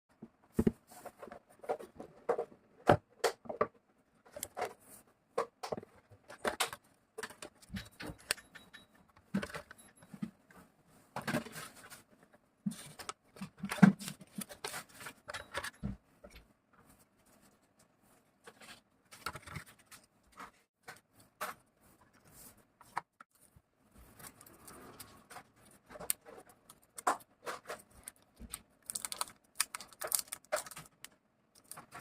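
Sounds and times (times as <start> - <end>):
box and packaging handling: 12.7 - 16.0, 18.4 - 32.0.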